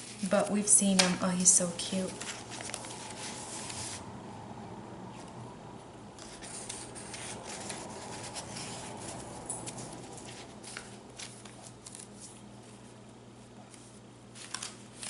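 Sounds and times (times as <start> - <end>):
paper pages rustling: 1.8 - 4.0, 6.2 - 13.0, 13.6 - 15.0.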